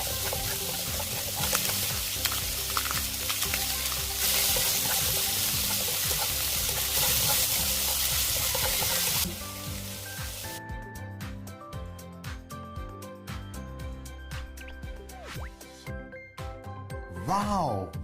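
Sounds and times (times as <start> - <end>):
seafood sizzling in a frying pan: 0.0 - 10.6.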